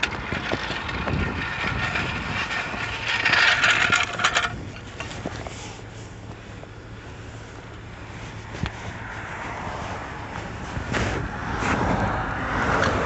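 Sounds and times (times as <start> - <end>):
low steady hum: 0.0 - 12.5
vehicle passing by: 8.1 - 13.0.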